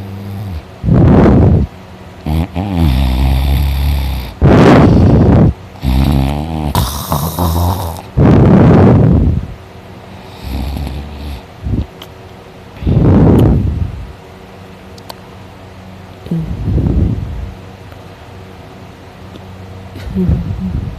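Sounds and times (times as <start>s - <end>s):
man snoring loudly: 0.0s - 8.9s, 10.2s - 11.4s.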